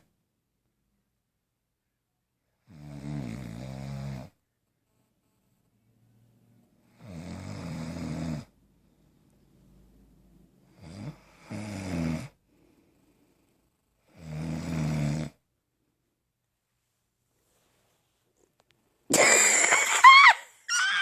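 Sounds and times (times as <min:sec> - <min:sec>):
loud snoring: 0:02.6 - 0:04.4, 0:06.9 - 0:08.6, 0:10.7 - 0:12.4, 0:14.0 - 0:15.4
quiet breathing: 0:08.4 - 0:09.9, 0:10.5 - 0:14.3.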